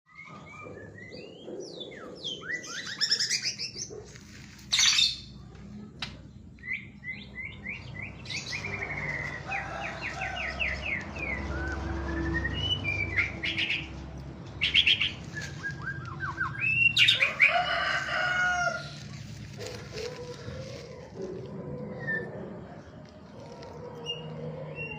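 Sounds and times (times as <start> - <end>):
bird singing trills and whistles: 0.1 - 3.9, 14.6 - 17.2.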